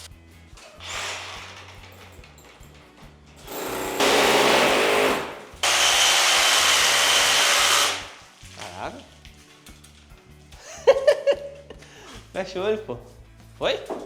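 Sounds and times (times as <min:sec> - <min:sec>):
rotary hammer drill boring: 0:00.8 - 0:01.7, 0:03.4 - 0:08.2.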